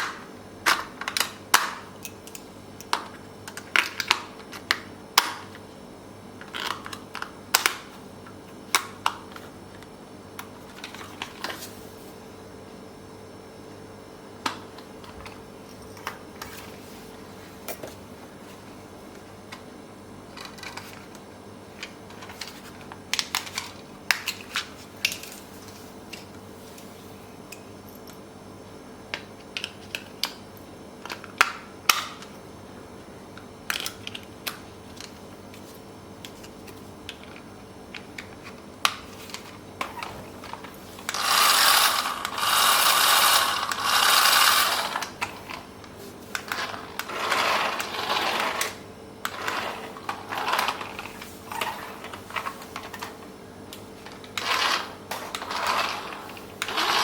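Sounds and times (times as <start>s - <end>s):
plastic toy car clicks and rattles: 41.1s - 45.2s.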